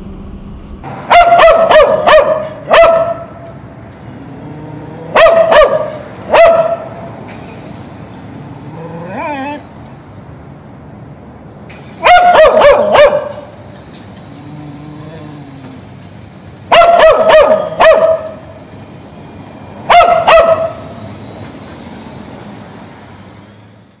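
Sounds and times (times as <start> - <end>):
dog barking: 1.1 - 3.4, 5.1 - 7.1, 12.0 - 13.6, 16.7 - 18.4, 19.9 - 20.9.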